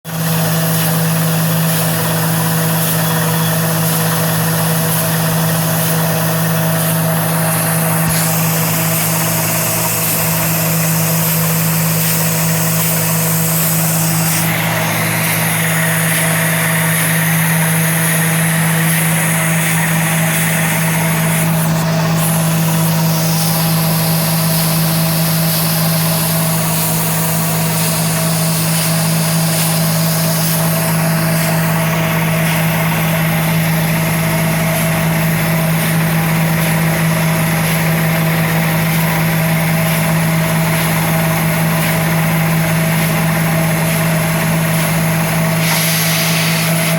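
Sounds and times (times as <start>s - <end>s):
drilling rig engine drone: 0.1s - 46.9s
hiss: 6.8s - 14.6s, 15.2s - 31.8s, 44.8s - 46.9s.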